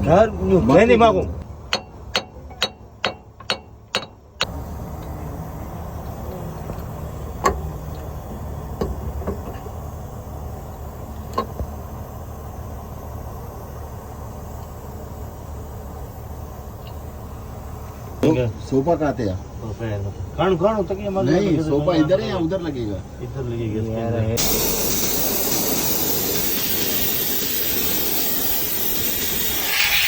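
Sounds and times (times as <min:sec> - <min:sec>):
sharp metallic taps: 0:01.7 - 0:04.5.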